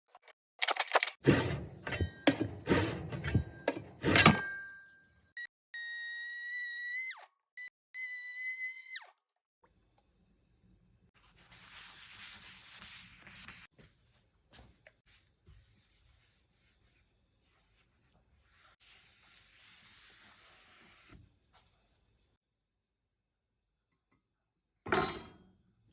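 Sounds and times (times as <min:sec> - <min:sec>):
hand saw rasping through wood: 0:01.2 - 0:04.4.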